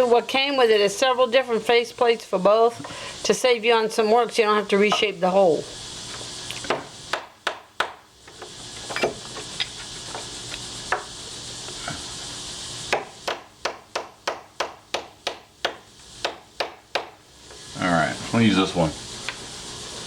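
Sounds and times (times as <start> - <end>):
steady hiss: 0.0 - 20.0.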